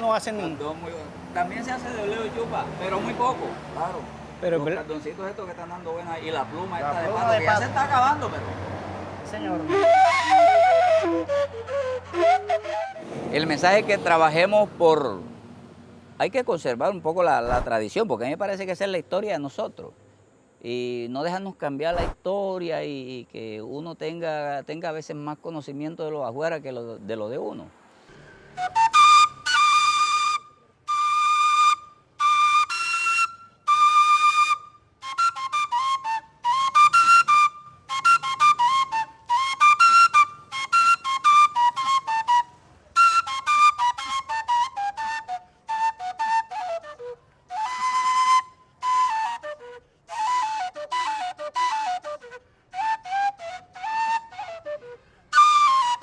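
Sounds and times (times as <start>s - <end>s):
cane flute melody: 0.0s - 8.2s, 9.3s - 14.2s, 28.1s - 56.0s.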